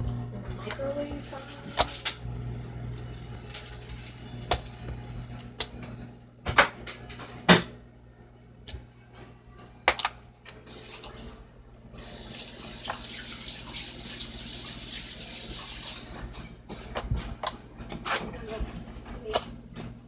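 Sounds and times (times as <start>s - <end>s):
water running from a tap: 0.0s - 2.3s, 12.0s - 16.3s.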